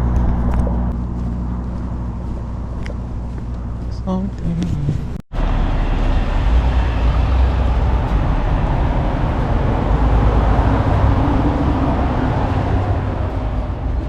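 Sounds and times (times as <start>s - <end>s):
moving vehicle rumble: 0.0s - 14.0s.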